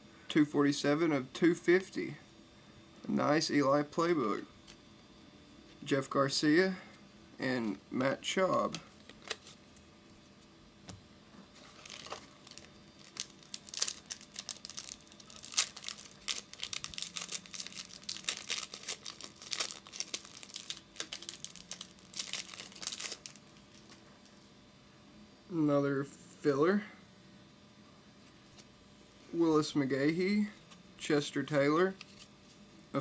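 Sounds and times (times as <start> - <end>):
wrapper tearing and crinkling: 11.6 - 24.0.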